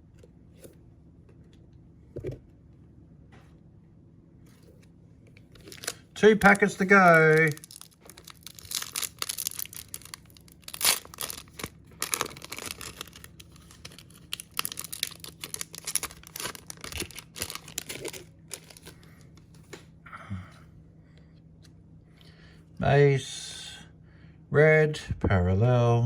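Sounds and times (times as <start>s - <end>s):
wrapper tearing and crinkling: 5.6s - 19.2s.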